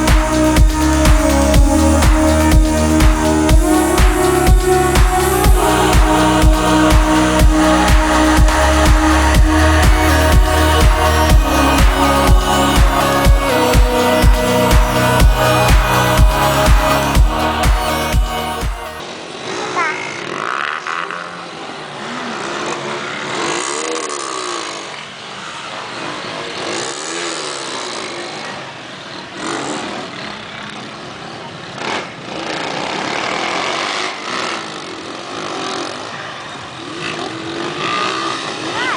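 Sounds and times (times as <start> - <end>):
engines revving: 0.0 - 18.6
noisy background: 0.0 - 19.0.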